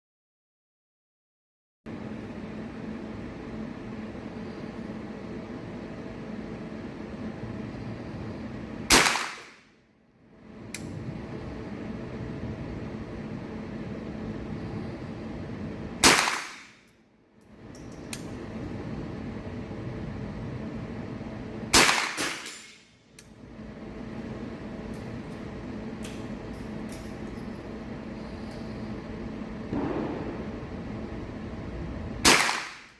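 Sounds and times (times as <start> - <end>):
steady hum: 1.9 - 32.9
rifle shots: 8.9 - 9.6, 16.0 - 16.8, 21.7 - 22.7, 32.2 - 32.9.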